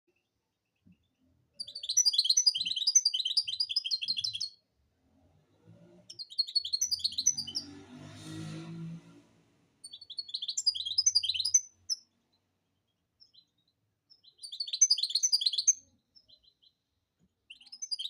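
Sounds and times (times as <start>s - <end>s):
finch twittering song: 0.1s - 4.6s, 6.1s - 7.8s, 9.8s - 18.0s
soft rushing noise: 7.6s - 9.8s.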